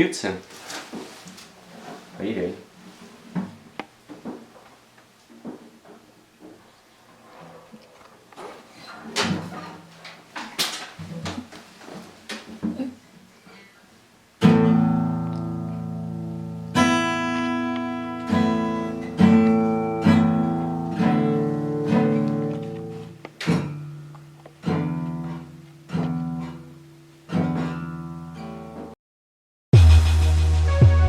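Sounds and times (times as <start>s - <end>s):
acoustic guitar chords strummed: 14.4s - 28.9s.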